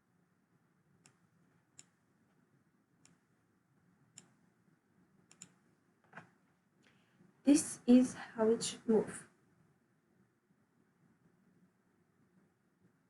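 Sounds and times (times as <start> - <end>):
mouse and keyboard clicks: 5.3 - 6.3.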